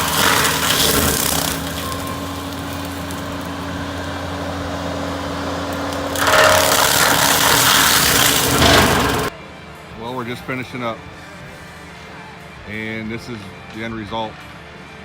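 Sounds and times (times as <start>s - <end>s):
mulcher shredding brush and wood: 0.0s - 9.3s
skid steer engine running: 0.0s - 9.4s.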